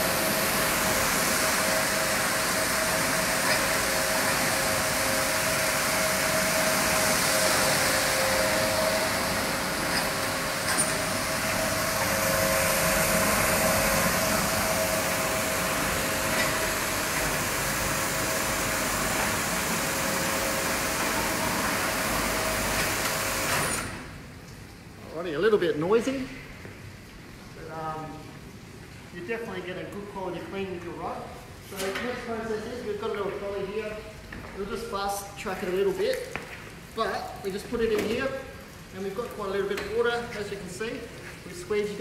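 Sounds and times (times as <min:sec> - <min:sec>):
steady machine whine: 0:00.0 - 0:24.1
rug washing machine running: 0:00.0 - 0:24.4.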